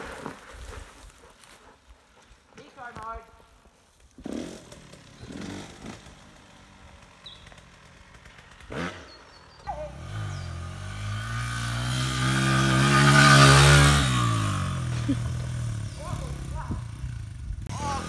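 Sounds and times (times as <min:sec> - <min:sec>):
dirt bike passing: 0:00.0 - 0:18.0.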